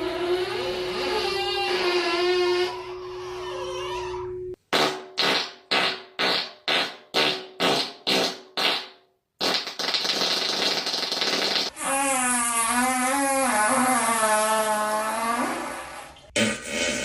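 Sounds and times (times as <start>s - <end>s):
fart sound effect: 4.7s - 17.0s.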